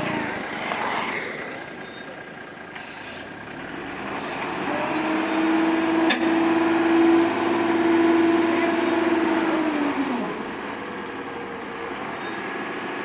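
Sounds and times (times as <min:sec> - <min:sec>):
truck engine running: 0:00.0 - 0:13.0.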